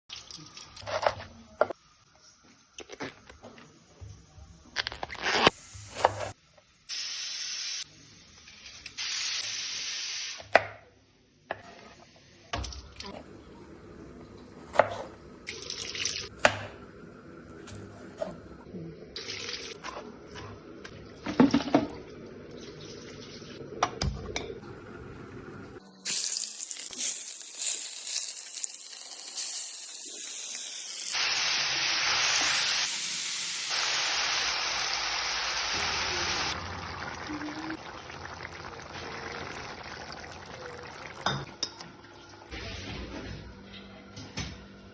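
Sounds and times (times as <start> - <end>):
water tap running into sink: 15.5 - 16.3, 19.2 - 19.8, 33.7 - 42.2
kitchen clatter: 19.8 - 22.0.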